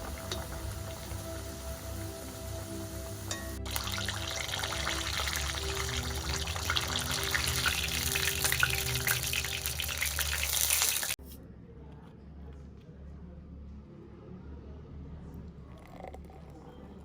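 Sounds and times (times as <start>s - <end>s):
hot oil sizzling and popping: 0.0s - 11.2s
soft background music: 0.0s - 11.2s.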